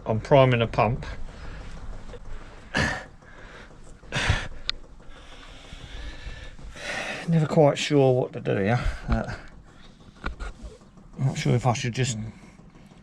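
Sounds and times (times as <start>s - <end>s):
fuel pump pulsing: 0.0s - 13.0s
breath-like bursts: 1.1s - 7.4s.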